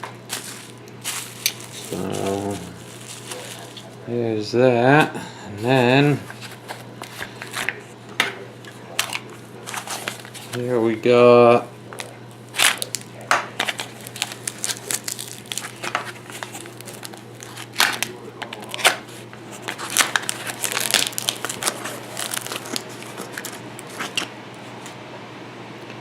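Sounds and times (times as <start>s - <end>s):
packaging tearing and crinkling: 0.0s - 4.0s, 8.7s - 10.7s, 12.0s - 24.3s.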